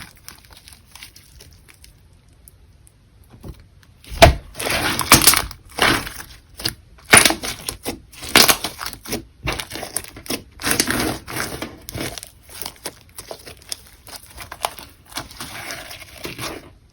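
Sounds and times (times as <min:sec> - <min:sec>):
slime squishing and popping: 0:04.0 - 0:16.6.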